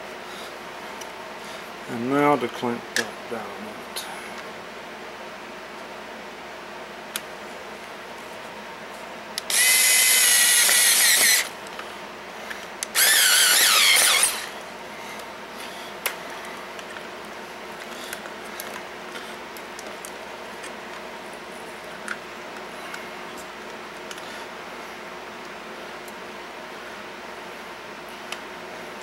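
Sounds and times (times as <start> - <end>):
electric drill running: 9.4 - 11.6, 12.9 - 14.6.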